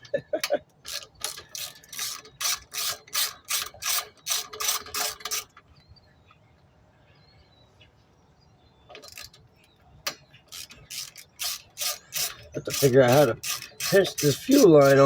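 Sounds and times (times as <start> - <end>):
ratchet wrench clicking: 0.9 - 5.5, 10.5 - 15.0.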